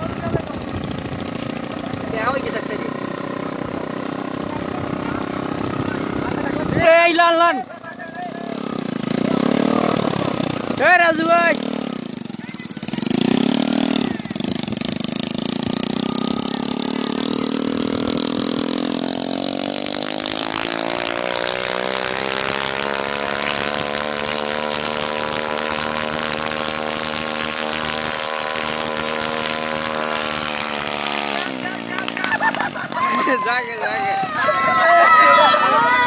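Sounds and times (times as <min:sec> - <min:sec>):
helicopter engine revving: 0:00.0 - 0:36.0.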